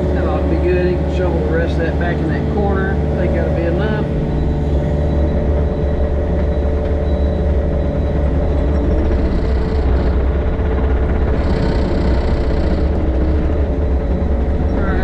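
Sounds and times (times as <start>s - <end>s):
diesel engine rumbling: 0.0s - 15.0s
hydraulic hiss: 11.2s - 13.5s.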